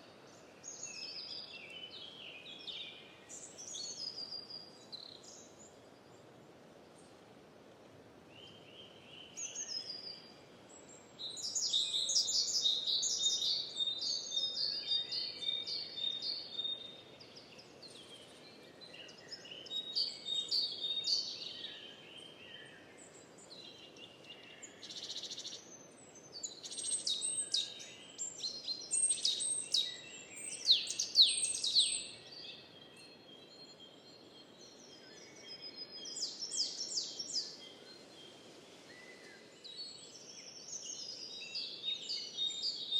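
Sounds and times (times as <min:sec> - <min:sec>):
faint outdoor background hiss: 0:00.0 - 0:42.9
birds chirping and trilling: 0:26.2 - 0:38.3.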